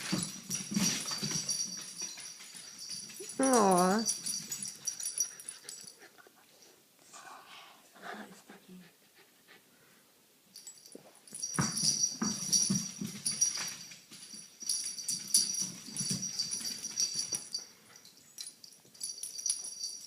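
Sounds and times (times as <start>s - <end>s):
metallic jingling: 0.0s - 6.0s, 10.5s - 20.0s
small dog panting and whimpering: 4.6s - 9.7s.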